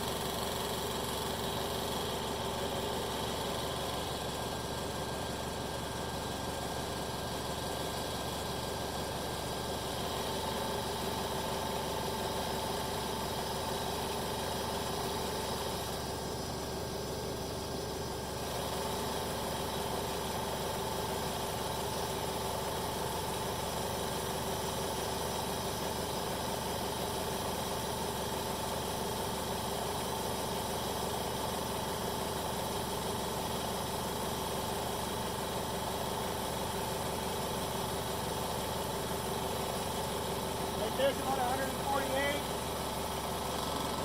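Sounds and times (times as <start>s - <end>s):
pump motor running: 0.0s - 44.0s.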